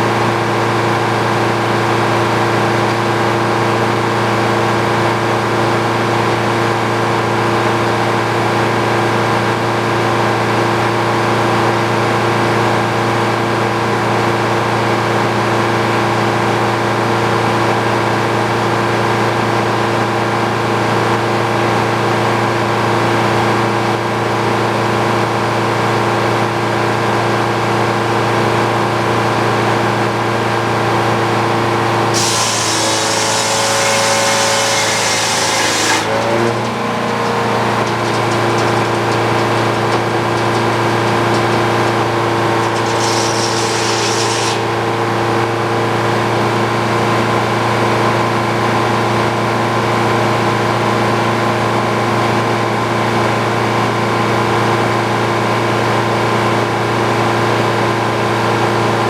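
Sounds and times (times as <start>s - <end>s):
sawmill saw humming: 31.2s - 46.2s.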